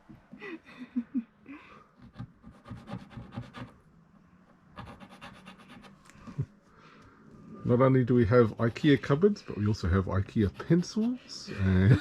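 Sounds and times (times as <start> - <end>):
pencil scratching on wood: 2.0 - 3.8, 4.8 - 6.0, 8.2 - 9.2, 10.0 - 11.2.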